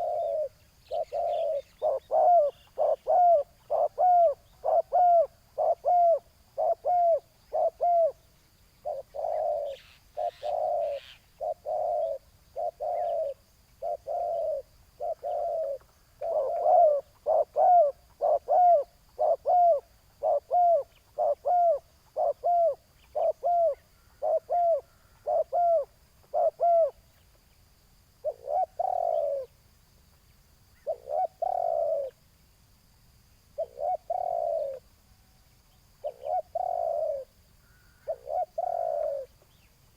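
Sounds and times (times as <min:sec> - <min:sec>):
doves cooing: 0:00.0 - 0:27.1, 0:28.2 - 0:29.6, 0:30.8 - 0:32.2, 0:33.6 - 0:34.9, 0:36.0 - 0:39.6.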